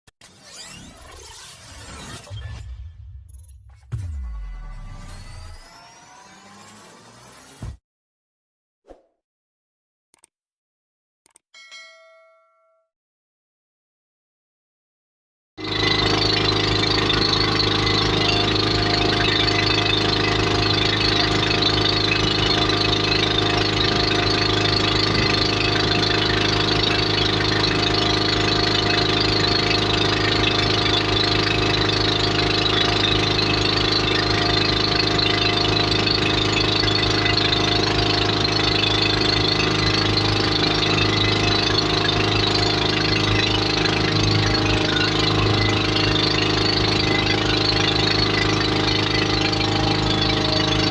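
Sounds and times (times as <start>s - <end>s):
motorboat engine running: 15.6s - 50.9s.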